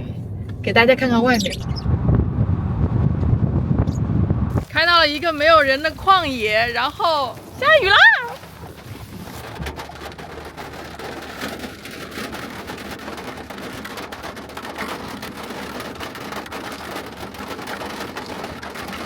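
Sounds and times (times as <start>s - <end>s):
moving car hum: 0.0s - 19.0s
raindrops tapping on car: 4.5s - 19.0s.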